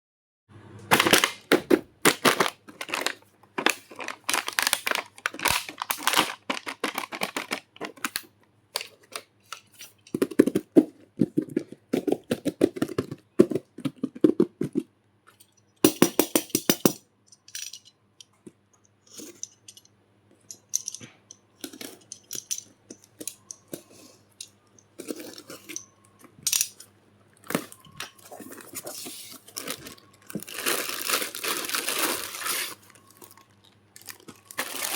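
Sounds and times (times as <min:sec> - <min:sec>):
plastic pieces clicking and rattling: 0:00.9 - 0:10.7, 0:15.4 - 0:18.3, 0:19.1 - 0:26.9
packaging crinkling: 0:02.1 - 0:09.1, 0:27.4 - 0:34.9.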